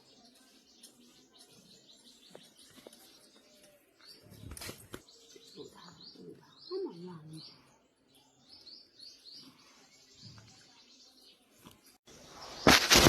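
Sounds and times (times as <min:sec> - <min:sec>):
small birds chirping: 0:00.0 - 0:13.0
rustling: 0:12.4 - 0:13.0.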